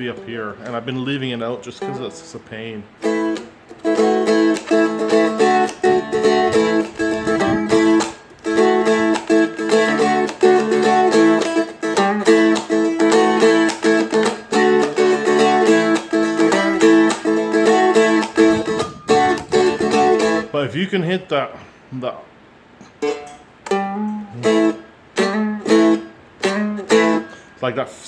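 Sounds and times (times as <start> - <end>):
flatpicked dulcimer riff with drone: 3.0 - 9.2, 12.0 - 20.4.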